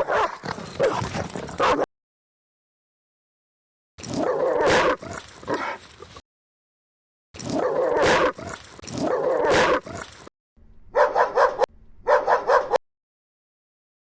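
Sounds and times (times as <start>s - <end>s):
dog barking fiercely: 0.0s - 1.9s, 4.2s - 5.8s, 7.6s - 10.1s, 10.9s - 12.8s.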